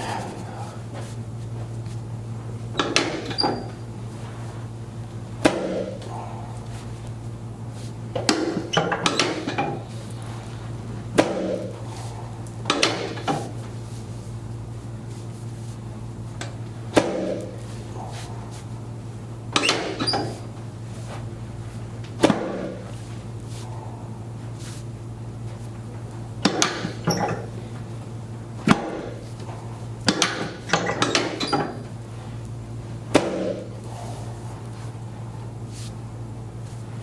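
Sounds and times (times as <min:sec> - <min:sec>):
steady low hum: 0:00.0 - 0:37.0
knocks and thuds of spine adjustment: 0:02.7 - 0:03.8, 0:05.4 - 0:06.1, 0:08.1 - 0:09.9, 0:11.1 - 0:11.8, 0:12.6 - 0:13.6, 0:16.9 - 0:17.6, 0:22.1 - 0:22.9, 0:33.1 - 0:33.7.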